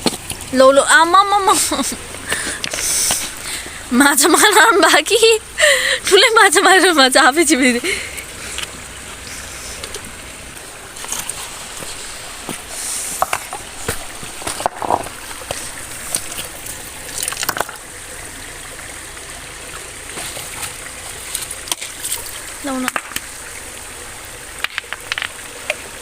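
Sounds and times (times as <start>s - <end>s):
small splashes and stone knocks: 0.0s - 0.6s, 1.8s - 3.8s, 8.1s - 23.8s, 24.4s - 26.0s
stream water running: 0.0s - 26.0s.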